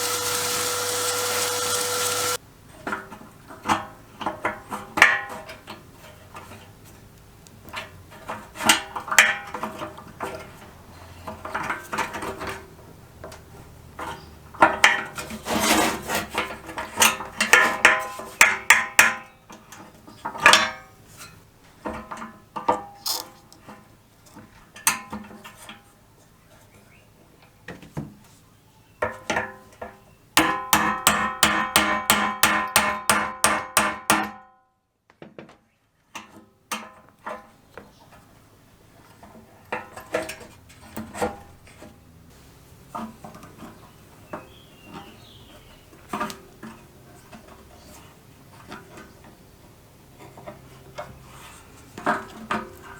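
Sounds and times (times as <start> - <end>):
tools knocking on metal can: 29.0 - 34.5.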